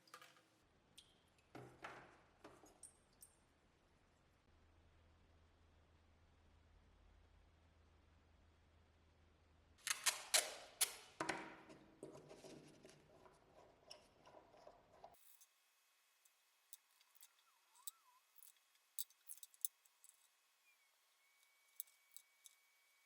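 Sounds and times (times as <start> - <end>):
small hard objects clinking: 15.1 - 15.5, 16.8 - 20.4, 21.4 - 23.0.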